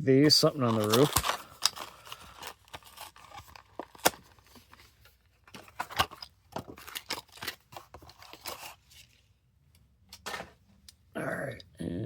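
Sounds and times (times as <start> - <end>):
plastic blister pack crackling: 0.3 - 4.4.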